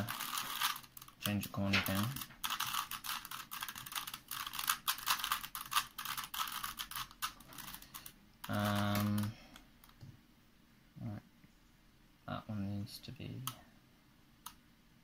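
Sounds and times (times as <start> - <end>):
puzzle cube clicking: 0.0 - 10.0.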